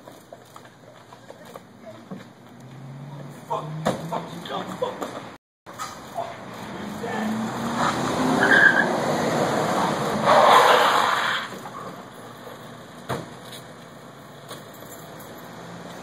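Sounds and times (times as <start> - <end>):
car tyres skidding: 6.3 - 13.4.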